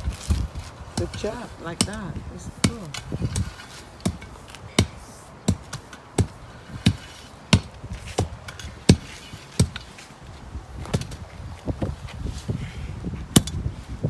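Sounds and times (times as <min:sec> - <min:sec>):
hand tool striking soil: 0:00.0 - 0:10.1, 0:13.3 - 0:13.7.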